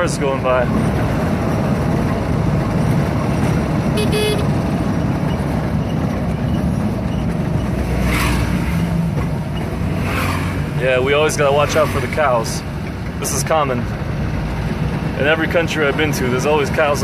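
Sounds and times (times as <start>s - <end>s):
car road and engine noise: 0.0s - 17.0s
car horn toot: 4.0s - 4.6s.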